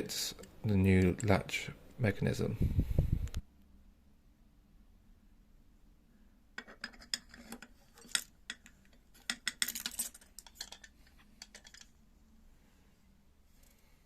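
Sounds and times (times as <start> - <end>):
metal door-handle parts clinking: 6.7 - 11.9.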